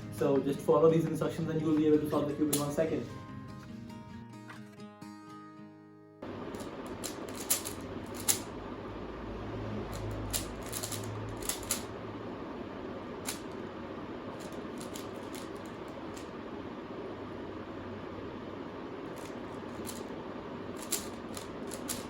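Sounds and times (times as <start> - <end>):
room hiss: 6.2 - 22.0
plastic puzzle cube clicking: 20.8 - 22.0.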